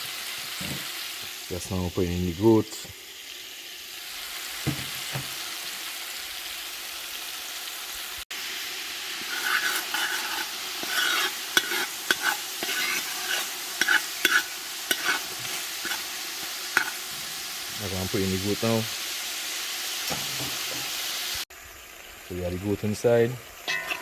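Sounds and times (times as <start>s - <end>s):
curry sizzling in hot oil: 0.0s - 24.0s
spoon scraping a pot: 9.2s - 17.7s, 23.7s - 24.0s.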